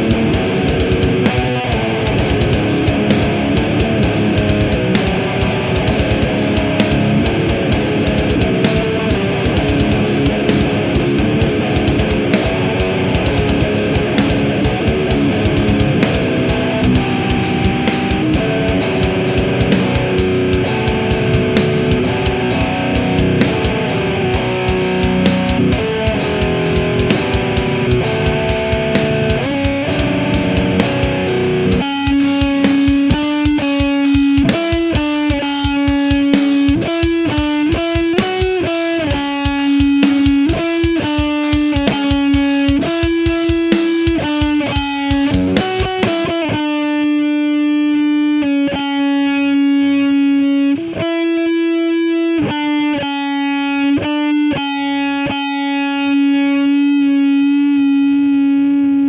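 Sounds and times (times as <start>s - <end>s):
drum backing track: 0.0s - 46.7s
electric guitar melody: 0.0s - 59.0s.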